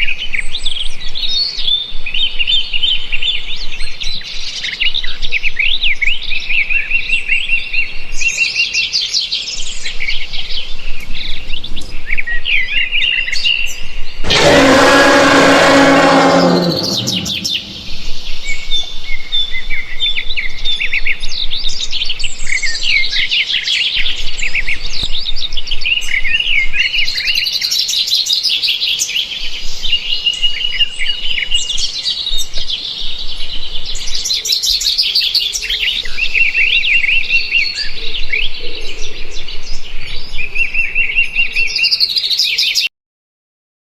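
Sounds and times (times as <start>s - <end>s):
birds chirping and singing: 14.2s - 18.1s.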